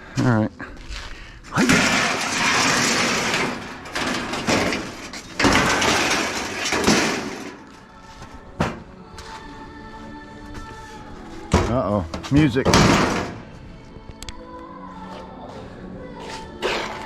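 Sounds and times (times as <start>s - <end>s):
scrap metal scraping and clattering: 1.5s - 7.9s, 11.6s - 13.6s, 16.6s - 17.0s.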